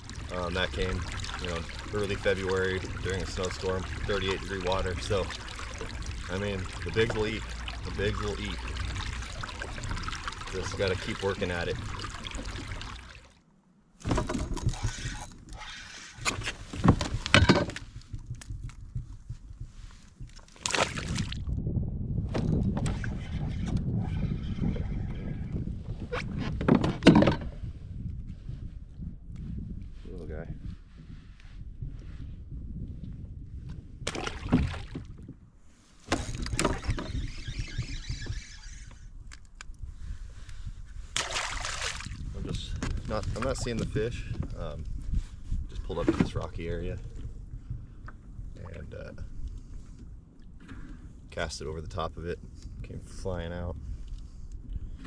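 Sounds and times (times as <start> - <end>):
knocks and scrapes against boat: 0.0 - 13.0, 14.0 - 21.3, 22.3 - 27.8, 34.4 - 39.1, 42.7 - 46.9, 50.6 - 51.6
low rumble: 0.0 - 13.3
water rushing: 0.0 - 13.4, 41.2 - 42.2
water around a kayak: 0.0 - 55.0.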